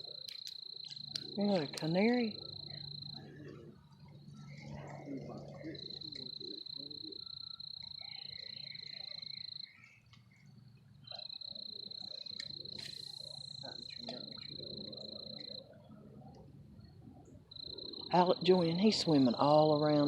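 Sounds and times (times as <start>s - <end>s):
high-pitched insect or frog trill: 5.7s - 9.9s.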